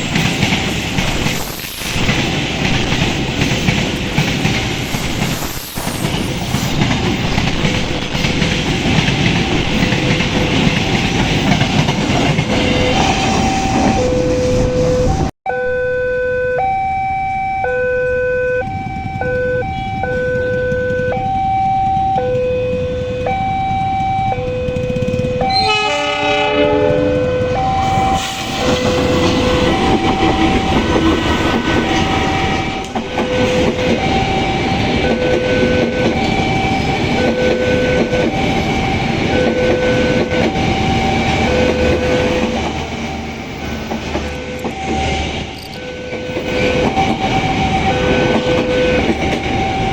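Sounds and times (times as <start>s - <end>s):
train wheels clattering on rail: 0.0s - 14.1s, 24.1s - 49.9s
alternating warning tones: 0.0s - 49.9s
train horn: 24.5s - 42.6s, 46.1s - 49.9s.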